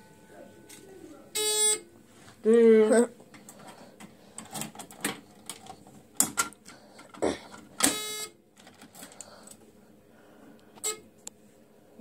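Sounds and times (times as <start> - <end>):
electronic buzzer beep: 1.4 - 1.9, 7.9 - 8.4, 10.8 - 11.0.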